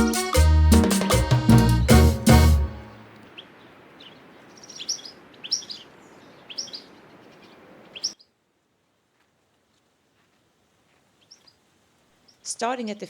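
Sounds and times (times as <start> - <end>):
faint steady hiss: 1.9 - 13.0
small songbird chirping: 3.4 - 8.3, 11.2 - 11.6.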